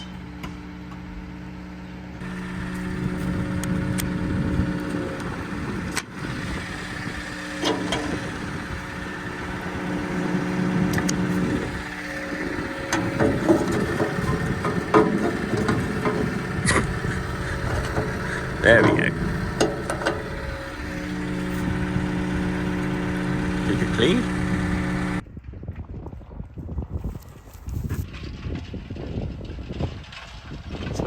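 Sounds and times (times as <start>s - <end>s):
diesel engine running: 0.0s - 25.2s
knocks and clunks: 2.2s - 25.2s.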